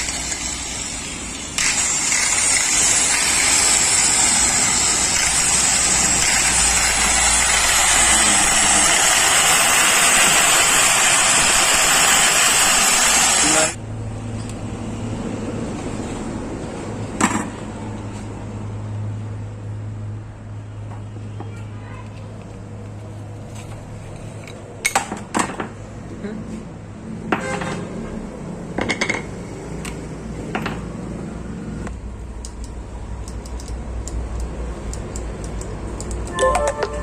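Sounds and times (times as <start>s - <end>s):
electric grinder whining: 0.0s - 13.8s.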